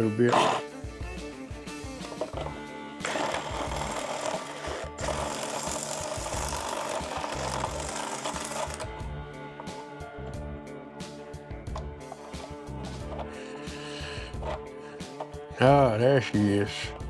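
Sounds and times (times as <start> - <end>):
small tool grinding: 0.0 - 0.7, 1.8 - 10.4, 11.7 - 15.4
background music: 0.0 - 17.0.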